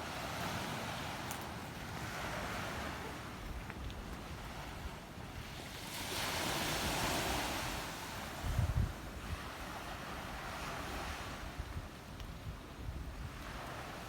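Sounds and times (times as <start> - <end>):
sea waves washing on shore: 0.0 - 12.2
wind buffeting microphone: 6.8 - 14.0.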